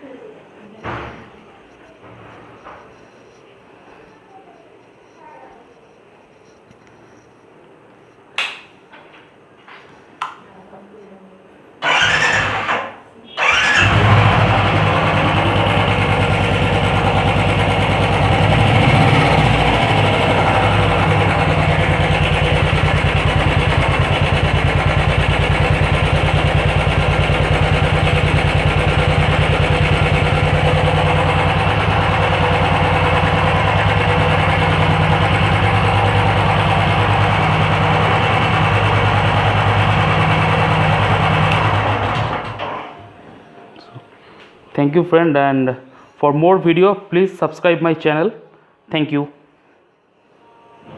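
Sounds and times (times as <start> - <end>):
motorcycle engine idling: 13.4 - 42.4.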